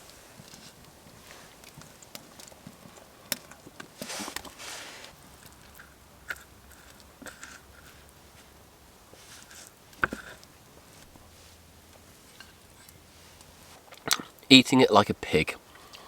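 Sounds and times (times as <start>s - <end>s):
clicks and knocks while eating: 0.3s - 8.5s, 9.4s - 11.0s, 13.9s - 14.5s
scraping rustle: 3.8s - 5.2s, 6.7s - 13.9s.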